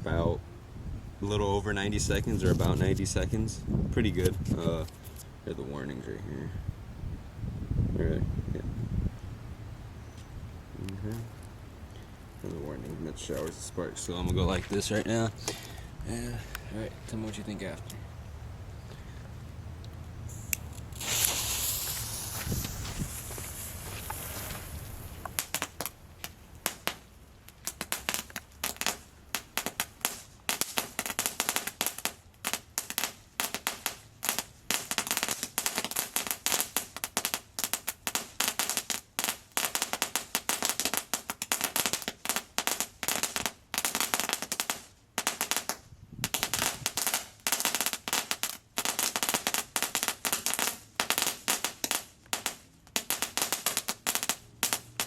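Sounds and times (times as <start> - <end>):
crackling firework fountain pops: 20.3 - 55.0.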